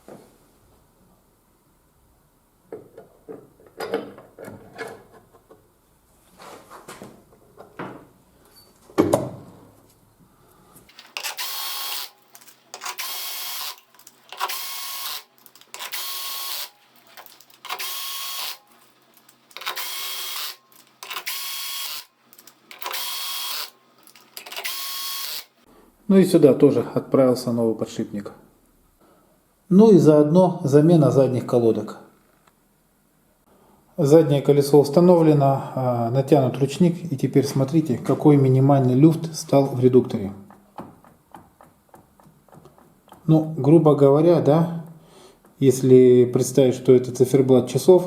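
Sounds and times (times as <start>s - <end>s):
metal parts clinking: 10.9s - 24.8s
power drill running in bursts: 10.9s - 25.6s.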